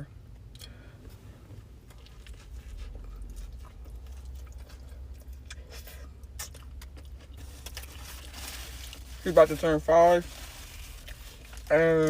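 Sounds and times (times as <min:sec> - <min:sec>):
person chewing food: 0:01.5 - 0:09.1.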